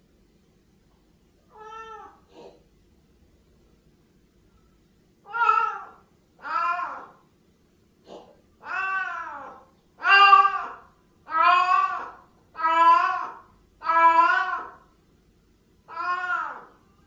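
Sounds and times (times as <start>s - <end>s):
cats meowing: 1.5s - 2.2s, 5.3s - 7.2s, 8.6s - 14.8s, 15.9s - 16.8s.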